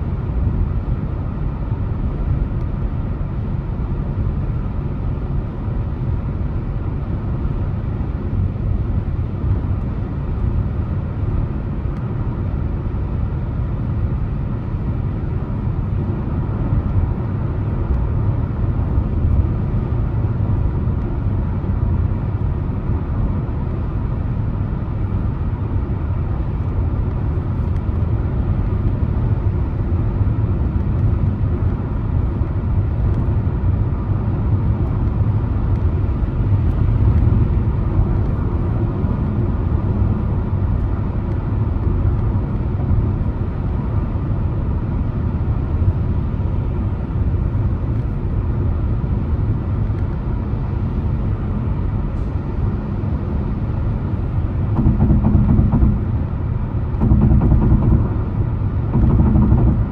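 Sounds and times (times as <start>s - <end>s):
car road and engine noise: 0.0s - 59.9s.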